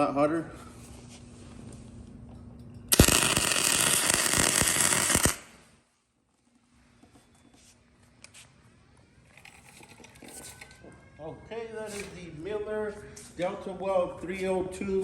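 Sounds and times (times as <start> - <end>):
welding arc crackling: 2.9 - 5.6.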